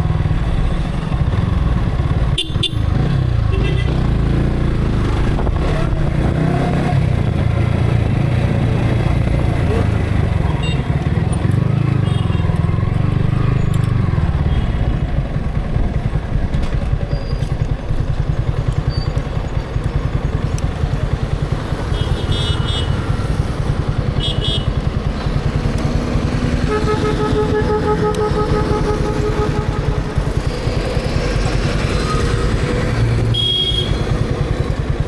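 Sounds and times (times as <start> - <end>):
motorcycle engine running: 0.0 - 35.0
long vehicle horn: 2.3 - 2.9, 3.5 - 4.0, 21.9 - 23.0, 24.2 - 24.8, 26.5 - 30.4, 33.3 - 34.1.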